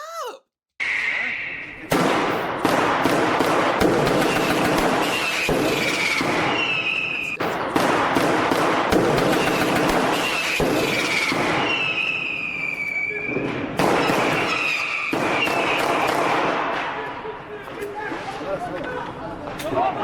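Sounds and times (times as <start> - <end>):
whistling rockets: 0.8 - 8.3, 8.9 - 17.2
firework bangs and crackling: 1.9 - 17.2.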